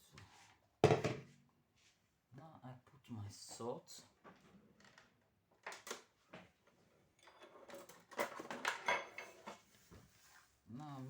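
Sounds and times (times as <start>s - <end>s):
kitchen utensils clattering: 7.2s - 9.6s.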